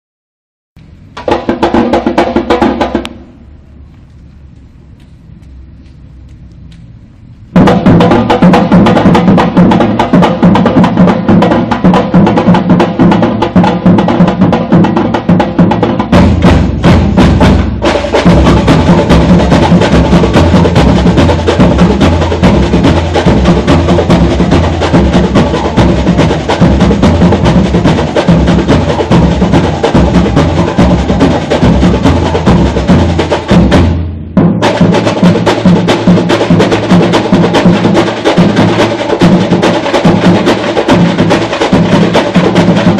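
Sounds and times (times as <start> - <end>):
sharp high percussion: 7.6 - 42.9
deep bass drums pulsing: 16.0 - 35.9.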